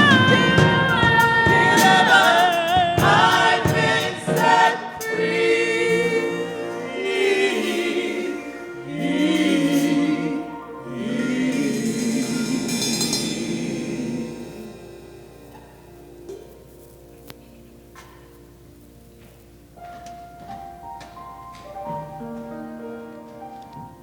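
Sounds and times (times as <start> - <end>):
gospel choir singing: 0.0 - 16.1
instrumental accompaniment: 0.0 - 24.0.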